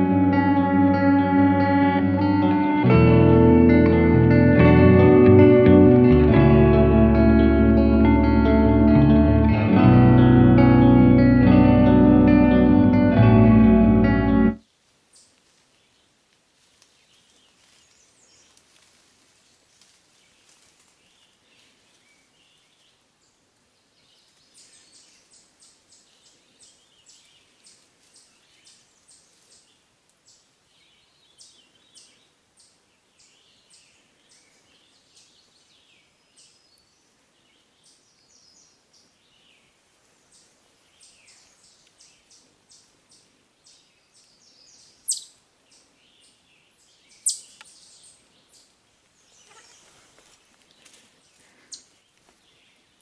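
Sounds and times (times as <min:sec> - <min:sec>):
songbirds chirping: 0:00.0 - 0:53.0
quiet hiss: 0:14.5 - 0:53.0.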